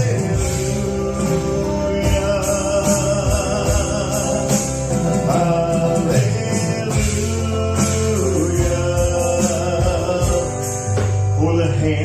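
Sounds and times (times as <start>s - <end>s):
bass: 0.0s - 12.0s
drums: 0.0s - 12.0s
live band playing slow song: 0.0s - 12.0s
wavering sung vocal: 0.0s - 12.0s.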